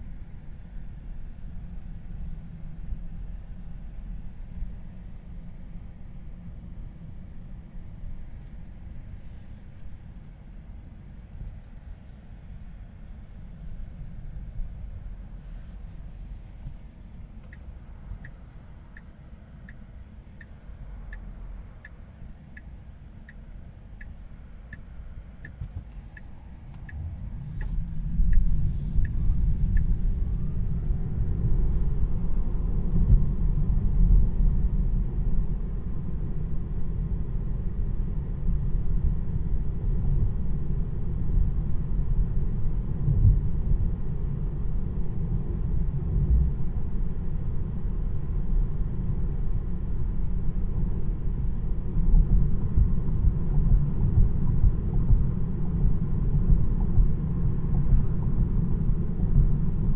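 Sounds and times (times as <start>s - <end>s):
turn signal ticking: 16.6s - 33.7s
tyre and road rumble: 25.5s - 34.3s.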